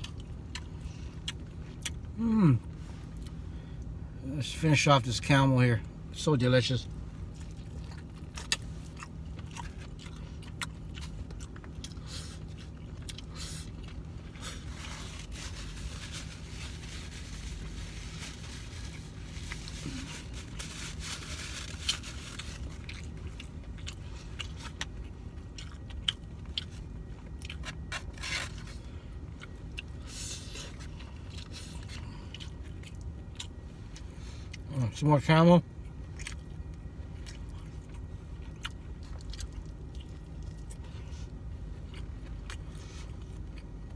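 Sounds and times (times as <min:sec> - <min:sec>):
man chewing food: 0:00.0 - 0:04.0, 0:06.9 - 0:34.7, 0:35.8 - 0:43.9
steady low hum: 0:00.0 - 0:43.9.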